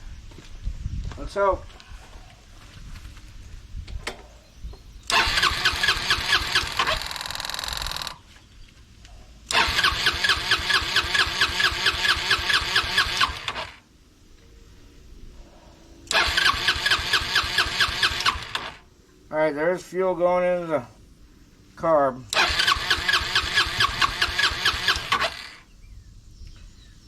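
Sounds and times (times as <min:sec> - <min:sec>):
scooter electric starter cranking: 0:05.1 - 0:08.2, 0:09.5 - 0:13.8, 0:16.1 - 0:18.8, 0:22.3 - 0:25.7.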